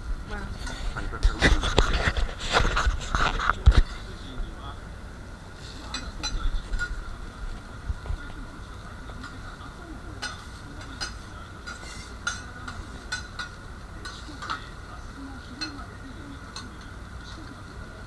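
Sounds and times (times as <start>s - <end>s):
metal utensils clinking on griddle: 5.6s - 7.0s, 9.1s - 17.6s.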